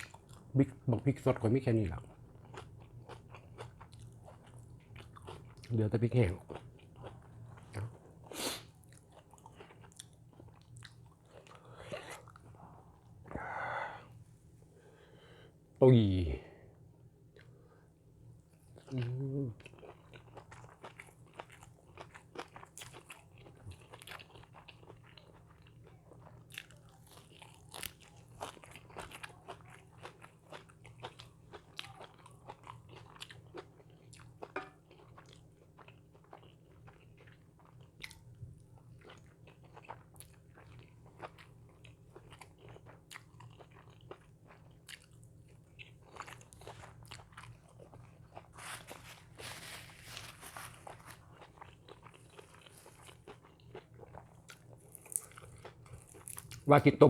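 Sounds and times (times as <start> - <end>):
person crunching food: 18.6 - 56.7.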